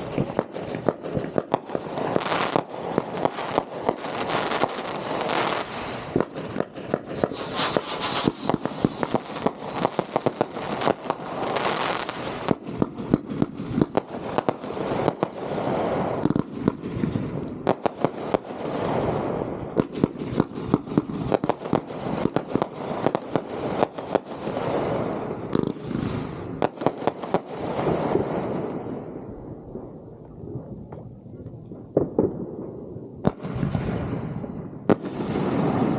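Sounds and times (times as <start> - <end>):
fireworks hissing crackle: 0.0 - 28.2
fireworks popping and banging: 0.0 - 28.8, 30.9 - 35.9.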